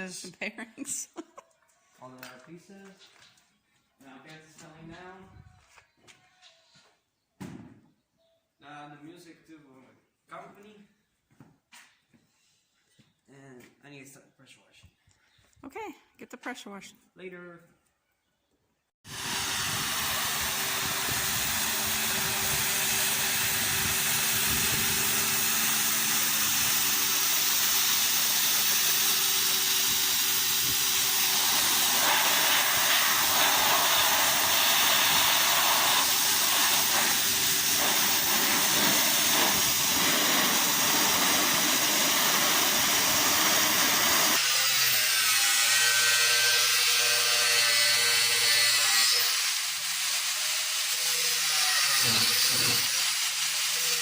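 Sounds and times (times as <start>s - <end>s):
motor and pump humming: 19.1s - 44.4s
pressure washer water jet hissing: 19.1s - 44.4s.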